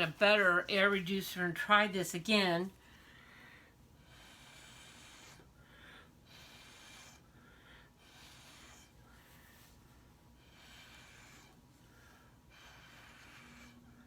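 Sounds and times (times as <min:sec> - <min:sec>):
faint airy breath puffs: 0:02.8 - 0:14.0.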